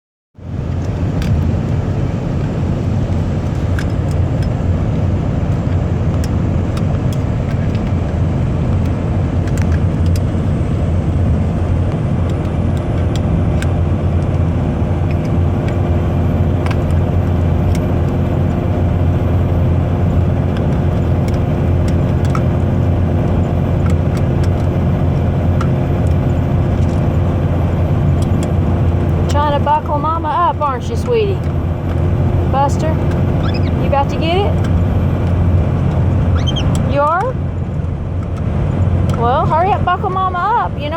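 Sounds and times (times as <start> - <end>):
car road and engine rumble: 0.4 - 40.9
light clicks and taps: 5.7 - 10.3.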